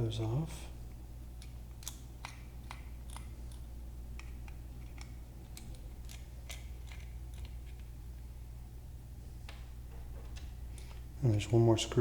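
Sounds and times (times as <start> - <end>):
steady low hum: 0.0 - 12.0
small sharp metal clicks: 1.4 - 7.9.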